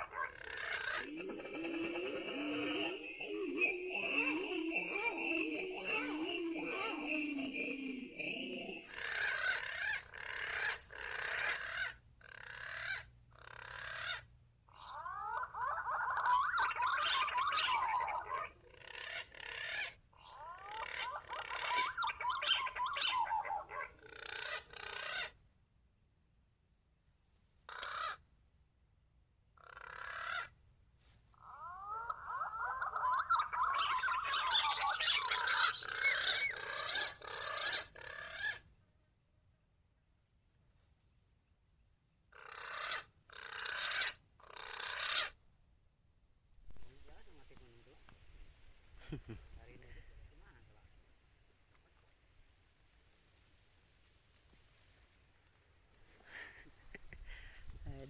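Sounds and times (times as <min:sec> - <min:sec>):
green pigeons calling: 0:00.0 - 0:25.4, 0:27.7 - 0:28.2, 0:29.6 - 0:30.5, 0:31.4 - 0:38.6, 0:42.4 - 0:45.4.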